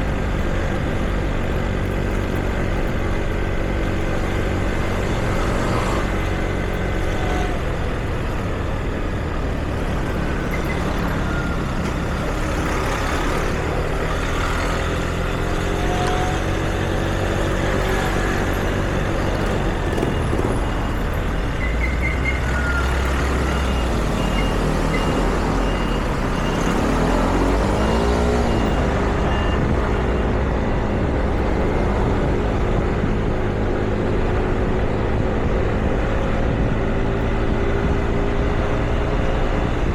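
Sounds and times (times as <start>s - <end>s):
vehicle engines passing: 0.0s - 39.9s
short evenly spaced beeps: 17.4s - 30.1s.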